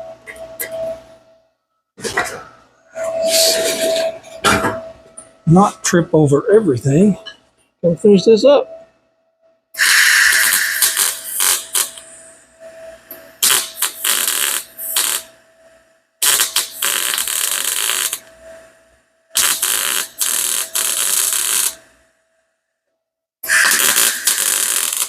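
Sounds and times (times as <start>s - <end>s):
welder crackling sizzle: 9.8s - 12.0s, 13.4s - 15.3s, 16.2s - 18.3s, 19.4s - 21.8s, 23.5s - 25.0s.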